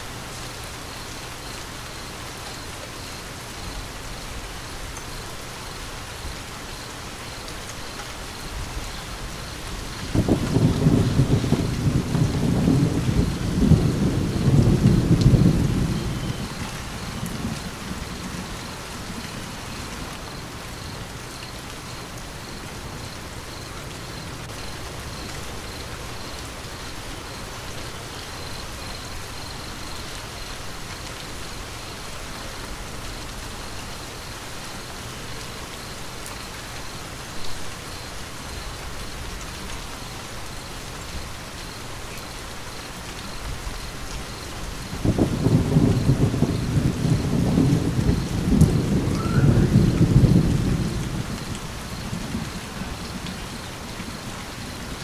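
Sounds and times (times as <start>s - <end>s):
steady rain falling: 0.0s - 55.0s
thunder rumbling: 8.4s - 21.2s, 44.3s - 55.0s.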